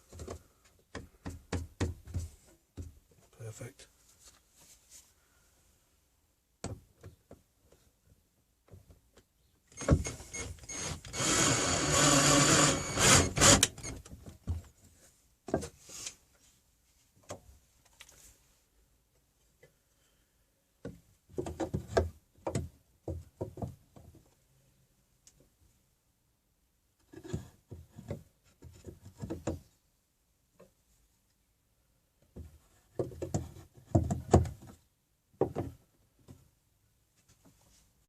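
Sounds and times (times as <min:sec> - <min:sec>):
power drill driving screw into wood: 0:09.7 - 0:14.0.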